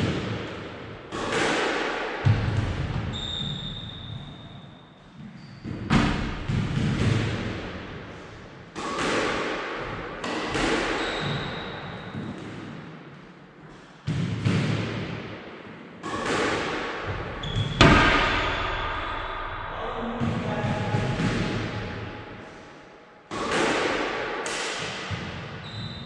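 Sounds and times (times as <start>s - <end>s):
racket hitting squash ball: 0.0s - 26.0s
shoes squeaking on court: 3.1s - 5.8s, 10.9s - 12.5s, 17.4s - 18.0s.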